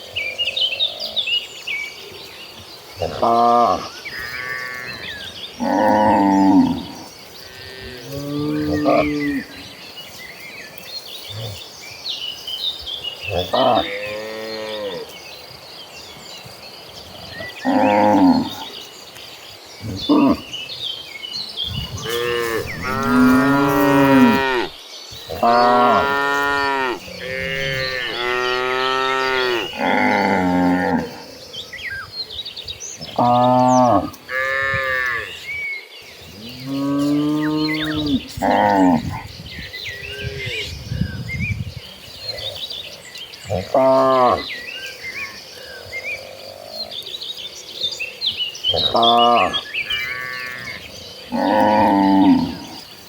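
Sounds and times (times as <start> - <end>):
cattle mooing: 22.0 - 31.2.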